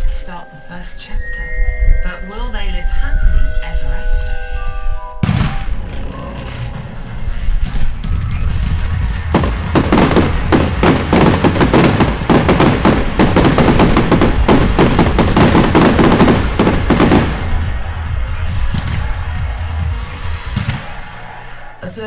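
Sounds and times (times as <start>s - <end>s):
background music: 0.0s - 22.0s
firework bangs and crackles: 5.2s - 21.2s.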